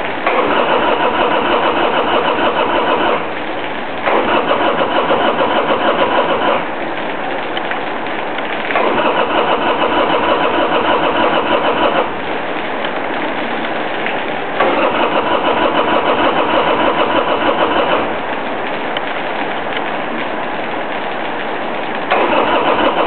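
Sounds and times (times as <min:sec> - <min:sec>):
motorcycle electric starter cranking: 0:00.3 - 0:03.2, 0:04.1 - 0:06.6, 0:08.8 - 0:12.1, 0:14.6 - 0:18.0, 0:22.1 - 0:23.0.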